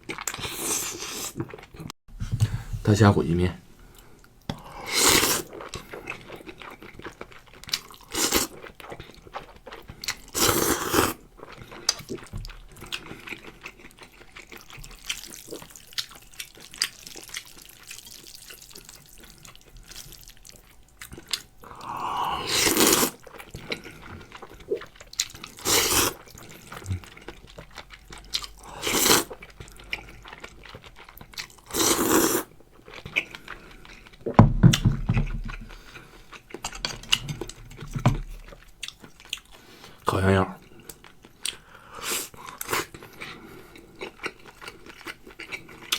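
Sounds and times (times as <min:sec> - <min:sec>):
wet chewing: 0:03.9 - 0:39.7
loud bites and slurps: 0:04.6 - 0:05.7, 0:10.3 - 0:11.2, 0:21.6 - 0:23.2, 0:25.5 - 0:26.2, 0:28.6 - 0:29.4, 0:31.6 - 0:32.5.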